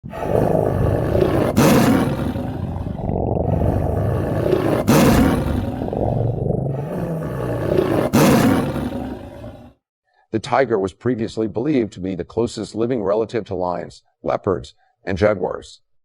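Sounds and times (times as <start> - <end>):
tiger roaring and growling: 0.0 - 9.8.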